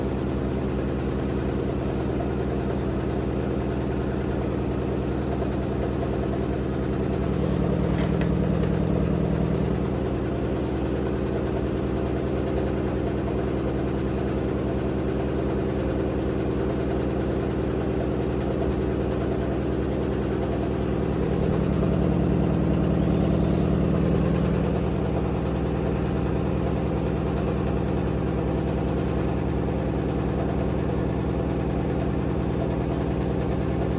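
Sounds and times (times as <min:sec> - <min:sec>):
washer-dryer motor and drum hum: 0:00.0 - 0:33.9
sharp click: 0:07.7 - 0:08.8.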